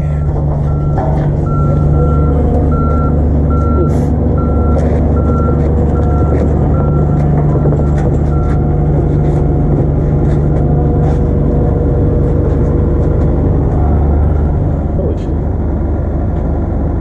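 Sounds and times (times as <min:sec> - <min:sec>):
backup alarm beeping: 0:00.0 - 0:09.4
diesel engine under load: 0:00.0 - 0:17.0.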